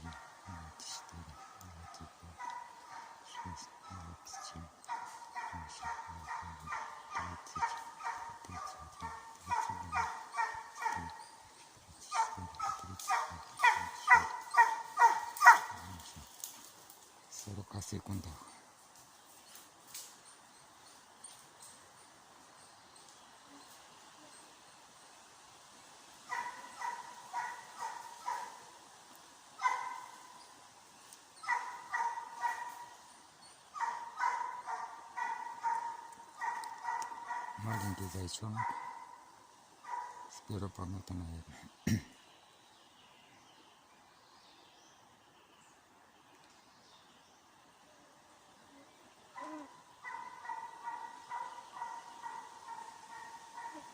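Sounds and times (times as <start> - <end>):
hound baying: 0.0 - 11.4, 12.0 - 16.2, 26.3 - 28.6, 29.6 - 30.2, 31.4 - 33.0, 33.8 - 40.4, 49.4 - 53.9.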